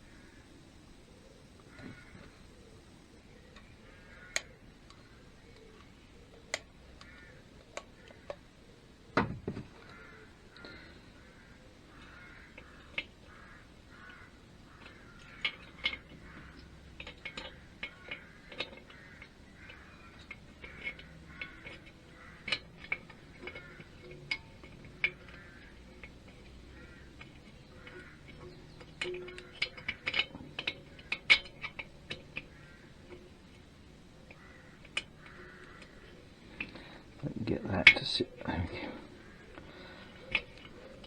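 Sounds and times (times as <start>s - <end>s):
crows cawing: 0.0s - 0.6s, 1.6s - 2.8s, 3.8s - 5.5s, 6.8s - 8.6s, 9.7s - 41.0s
metal parts clicking and tapping: 11.8s - 41.0s.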